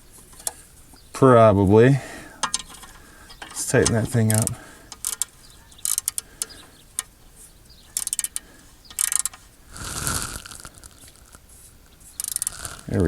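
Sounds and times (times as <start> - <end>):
ratchet pawl clicking: 2.4 - 7.1, 7.9 - 11.4, 12.0 - 13.0
ratchet rasp: 2.4 - 7.1, 8.0 - 13.0.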